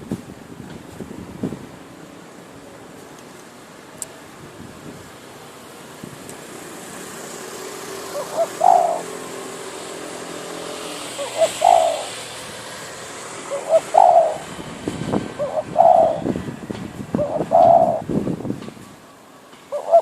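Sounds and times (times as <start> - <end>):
dove cooing: 8.1 - 9.4, 10.9 - 12.4, 13.4 - 14.6, 15.3 - 16.4, 17.2 - 18.1, 19.7 - 20.0.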